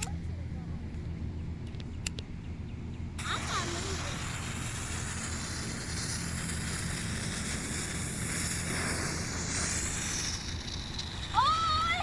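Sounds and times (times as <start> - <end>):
smoke bombs hissing: 3.2 - 12.0.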